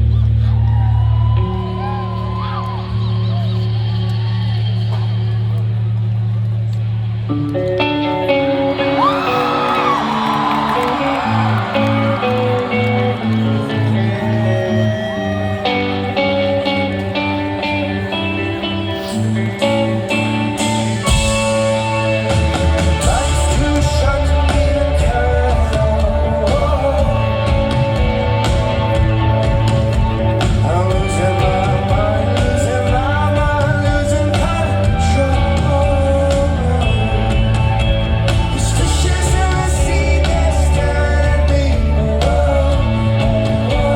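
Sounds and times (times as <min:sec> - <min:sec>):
bass and drums: 0:00.0 - 0:08.1, 0:08.9 - 0:43.9
guitars: 0:00.0 - 0:43.9
man singing: 0:20.9 - 0:43.9.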